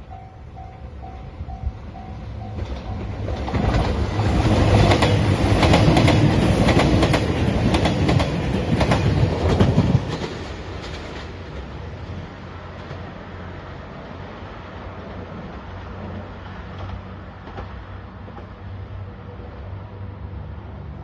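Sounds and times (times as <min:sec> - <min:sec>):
train passing rumble: 0:00.0 - 0:21.0
train wheels clacking over rails: 0:00.6 - 0:12.0.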